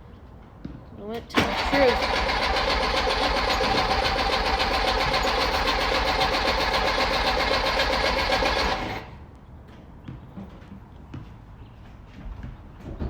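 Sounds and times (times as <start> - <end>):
car engine cranking on starter: 1.3 - 9.2.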